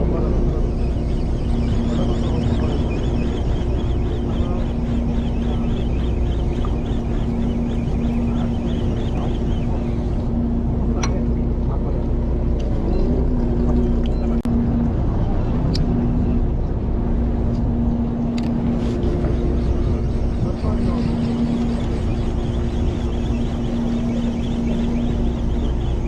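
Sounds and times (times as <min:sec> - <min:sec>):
boat engine rumbling: 0:00.0 - 0:26.0
faint fast ticking: 0:00.5 - 0:10.4, 0:18.7 - 0:26.0.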